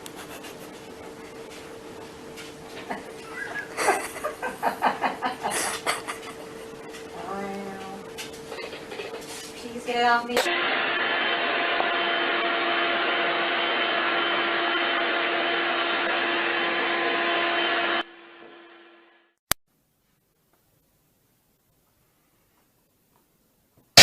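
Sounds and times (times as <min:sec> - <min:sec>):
electric motor whirring: 0:10.5 - 0:18.1.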